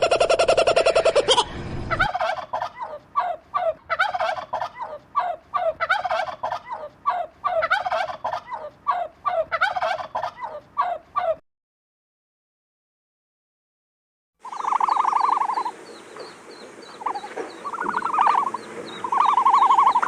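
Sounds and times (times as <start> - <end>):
bird rattling call: 14.4 - 20.0.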